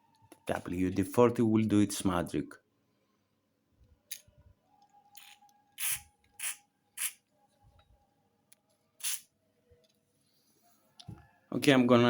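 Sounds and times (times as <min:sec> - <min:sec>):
aerosol can spraying: 0:05.2 - 0:07.2, 0:09.0 - 0:09.2.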